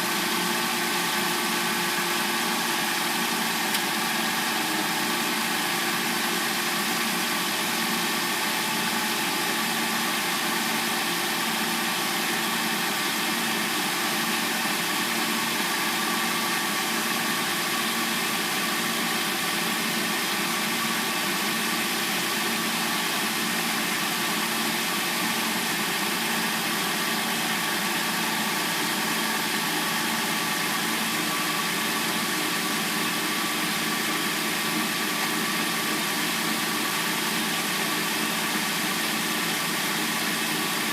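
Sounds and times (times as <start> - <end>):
car engine idling: 0.0 - 40.9.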